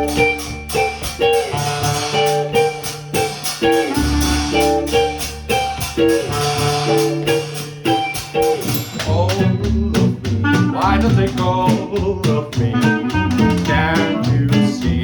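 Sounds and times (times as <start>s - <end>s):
clarinet: 0.0s - 8.8s, 10.0s - 12.0s, 12.6s - 15.0s
double bass: 0.0s - 15.0s
steady percussive beat: 0.0s - 15.0s
strummed guitar: 0.0s - 15.0s.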